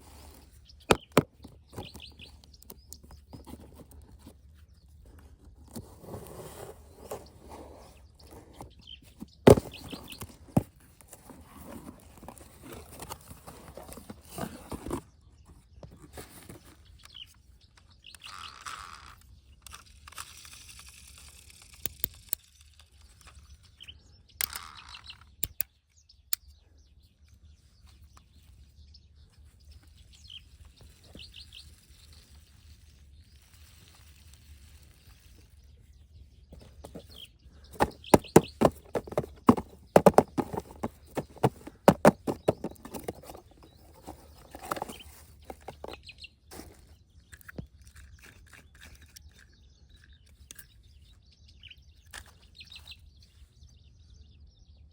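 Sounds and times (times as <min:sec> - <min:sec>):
small bird chirping: 0:00.3 - 0:05.9, 0:06.5 - 0:54.9
sharp clicks and knocks: 0:37.8 - 0:46.0.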